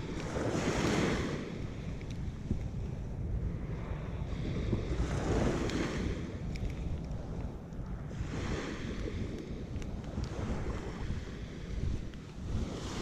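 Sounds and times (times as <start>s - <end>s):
surf washing onto beach: 0.0s - 7.4s, 8.0s - 13.0s
wind rumbling on microphone: 0.0s - 13.0s
faint clicks: 1.6s - 3.0s, 6.4s - 8.0s, 8.9s - 10.4s, 12.0s - 12.4s.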